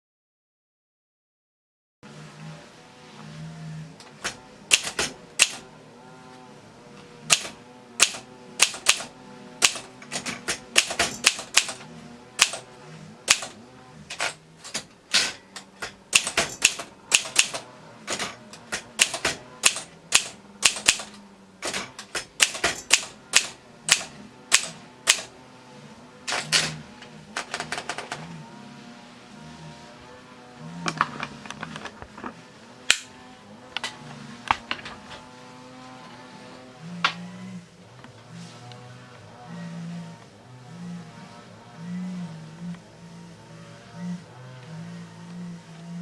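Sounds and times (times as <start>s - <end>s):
typewriter keys clicking: 4.2s - 5.6s, 7.3s - 12.6s, 13.3s - 25.3s, 26.3s - 26.8s, 27.4s - 28.2s.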